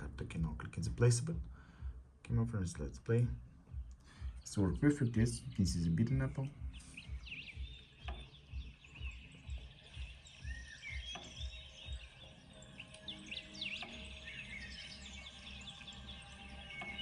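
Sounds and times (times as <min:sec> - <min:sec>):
birds chirping: 0:00.0 - 0:17.0
quiet background music: 0:00.0 - 0:17.0
steady low hum: 0:00.0 - 0:17.0.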